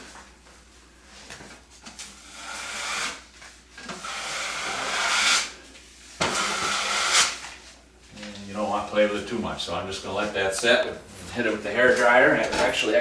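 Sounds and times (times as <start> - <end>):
drywall knife scraping compound: 2.0 - 5.6, 6.2 - 7.6.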